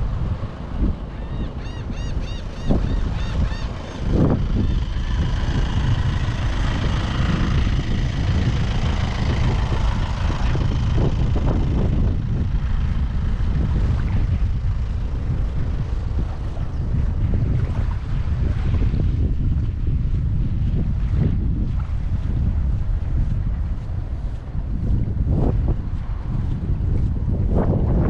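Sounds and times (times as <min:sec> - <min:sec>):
wind buffeting microphone: 0:00.0 - 0:28.0
bird calls: 0:01.1 - 0:04.4.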